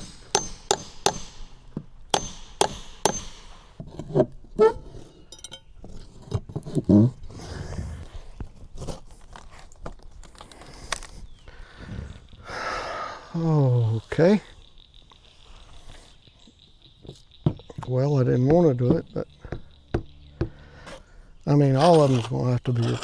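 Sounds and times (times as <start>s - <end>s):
wood and tools knocking on boards: 0.0s - 4.0s, 17.4s - 17.9s.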